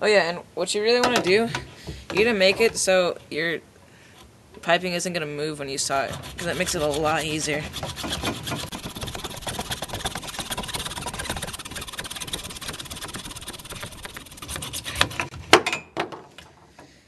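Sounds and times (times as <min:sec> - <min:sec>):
hacksaw cutting plastic pipe: 0:06.1 - 0:15.4.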